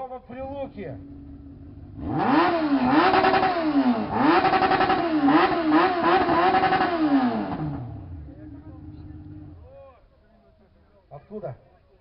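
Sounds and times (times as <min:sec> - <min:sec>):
motorcycle idling and revving: 0:00.0 - 0:09.8.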